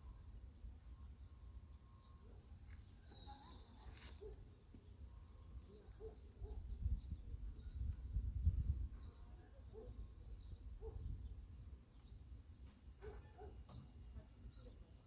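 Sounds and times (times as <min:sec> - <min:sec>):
bird chirps: 0:00.0 - 0:08.0.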